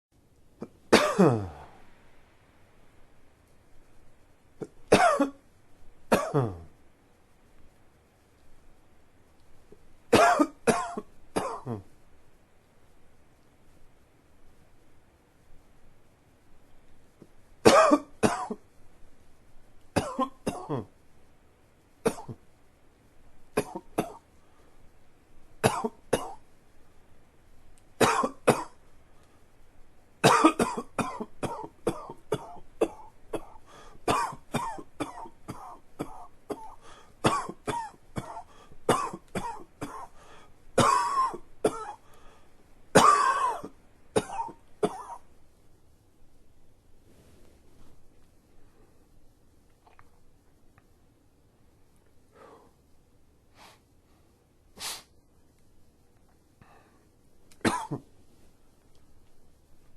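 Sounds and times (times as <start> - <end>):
man coughing: 0.6 - 1.7, 4.6 - 5.4, 6.1 - 6.7, 10.2 - 11.9, 20.0 - 20.9, 22.1 - 22.4, 23.6 - 24.2, 28.0 - 28.8, 30.2 - 40.1, 40.8 - 42.0, 43.0 - 45.2, 57.6 - 58.1.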